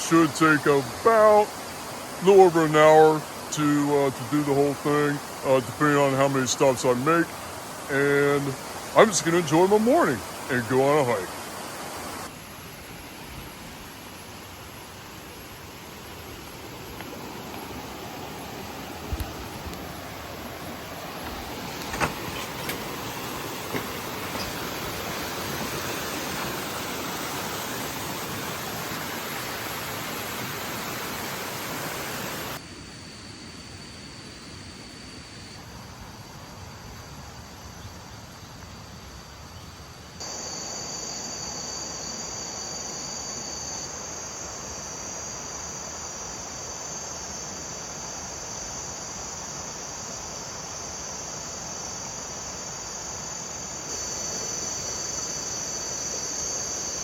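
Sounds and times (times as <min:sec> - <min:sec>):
waterfall rushing: 0:00.0 - 0:12.3, 0:15.8 - 0:32.6
running water: 0:00.0 - 0:32.6
insects droning: 0:00.0 - 0:57.0.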